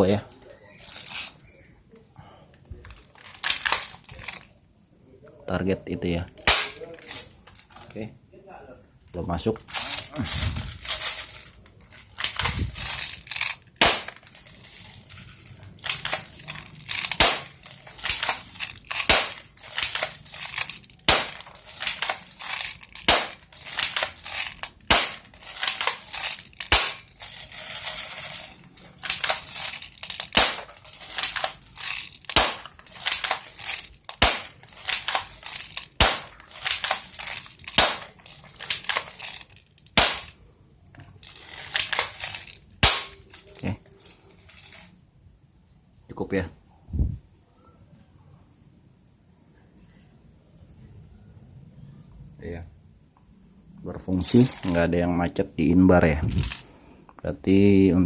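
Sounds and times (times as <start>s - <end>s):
airsoft pistol firing snap: 24.9s - 25.2s.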